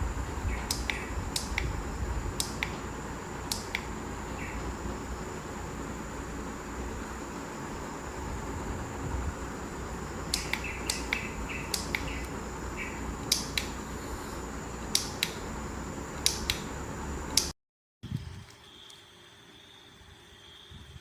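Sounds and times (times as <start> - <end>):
steady high whine: 0.0 - 17.5
sharp clicks: 0.5 - 1.8, 2.4 - 4.0, 10.3 - 12.4, 13.2 - 13.8, 14.9 - 15.5, 16.2 - 16.7, 17.3 - 17.5.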